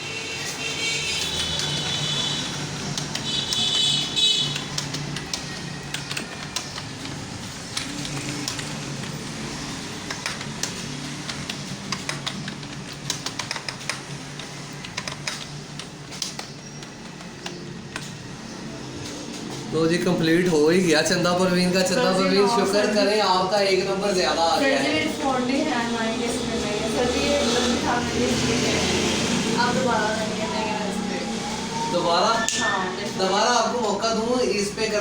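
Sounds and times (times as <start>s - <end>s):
keyboard keys clicking: 0.4s - 22.9s.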